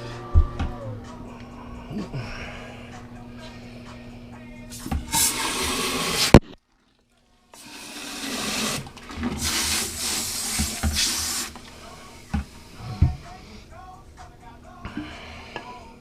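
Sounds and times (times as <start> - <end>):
water running and splashing: 4.9 - 11.9.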